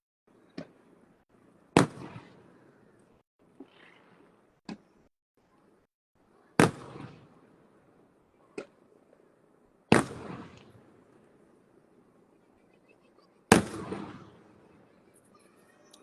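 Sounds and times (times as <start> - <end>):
fireworks bursting: 0.4 - 2.8, 6.4 - 12.4, 13.4 - 16.0.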